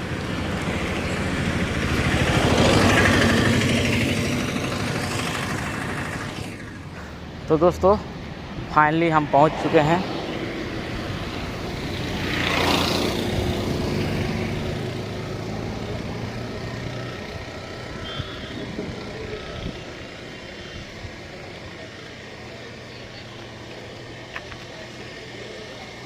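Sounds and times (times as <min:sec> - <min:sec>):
vehicle passing close by: 0:00.0 - 0:19.9
road traffic: 0:00.0 - 0:26.0.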